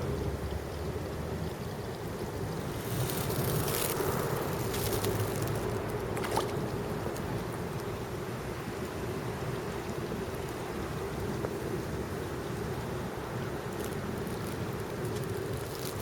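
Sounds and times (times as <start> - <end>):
running water: 0.0 - 7.8.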